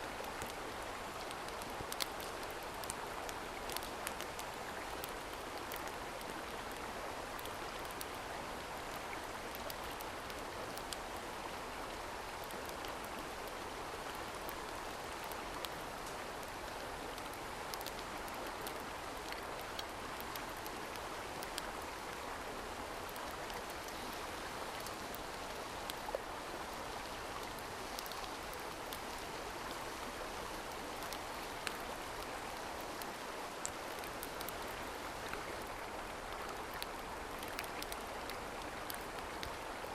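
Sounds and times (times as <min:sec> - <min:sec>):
faint sharp ticks: 0:27.4 - 0:29.0.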